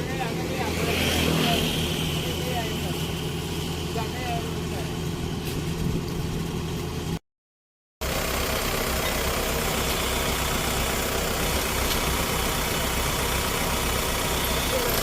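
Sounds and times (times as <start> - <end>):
diesel engine pulsing: 0.0 - 7.2, 8.0 - 15.0.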